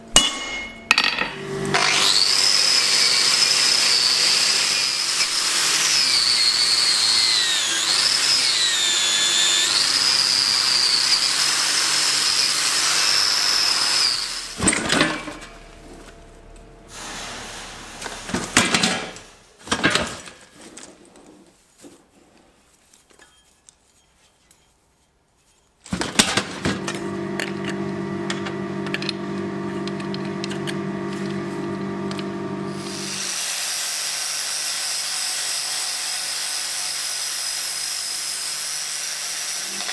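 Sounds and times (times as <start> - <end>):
high-pitched whining power tool: 1.4 - 18.9, 26.8 - 39.9
high hiss: 16.8 - 19.6.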